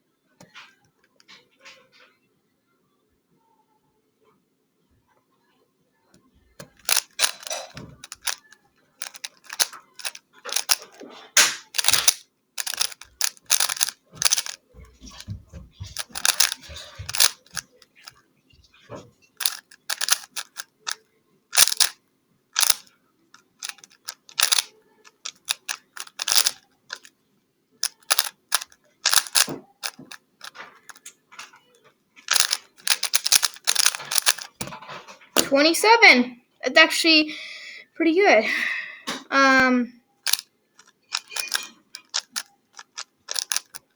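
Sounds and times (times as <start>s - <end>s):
puzzle cube plastic clicking: 6.6s - 18.1s, 19.4s - 22.0s, 22.6s - 27.1s, 27.8s - 31.6s, 32.3s - 34.7s, 40.2s - 43.9s.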